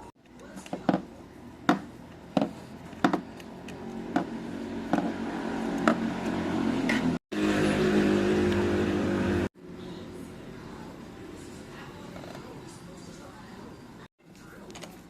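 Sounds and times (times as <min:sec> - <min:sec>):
scooter engine running: 0:02.3 - 0:09.5.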